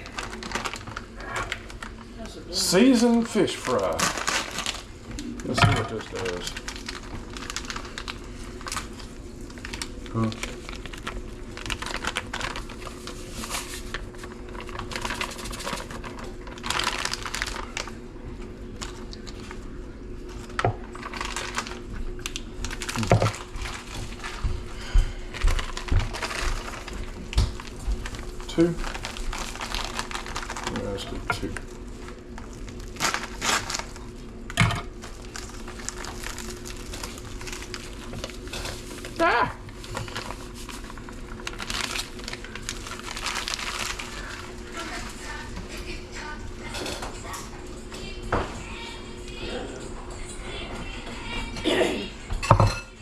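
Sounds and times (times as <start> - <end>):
fish dredged in breading: 2.9 - 19.6, 20.2 - 34.3, 34.9 - 45.6
rustling scrapes: 12.5 - 14.3.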